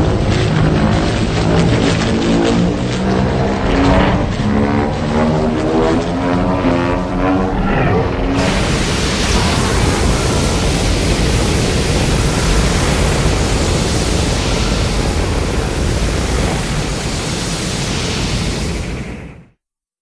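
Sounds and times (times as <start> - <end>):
loud rushing breath blast: 8.4 - 19.5.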